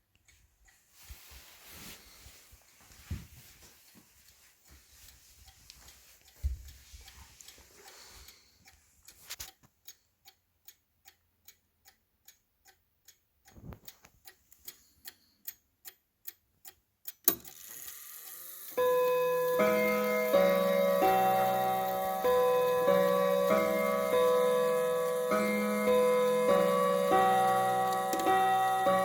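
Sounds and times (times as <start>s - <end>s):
clock ticking: 3.9s - 17.7s, 18.8s - 29.0s.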